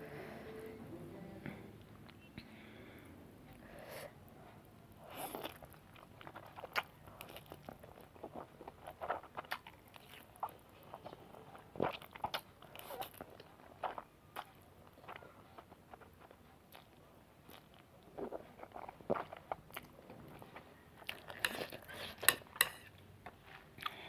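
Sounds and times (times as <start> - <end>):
chewing and biting noodles: 5.0 - 22.3.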